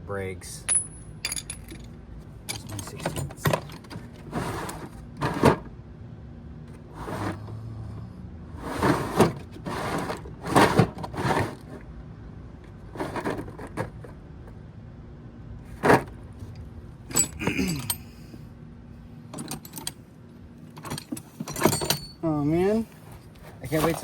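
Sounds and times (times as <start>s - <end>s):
metal tools clinking and rattling: 0.5s - 4.1s, 17.1s - 18.2s, 19.3s - 20.0s, 20.6s - 22.9s.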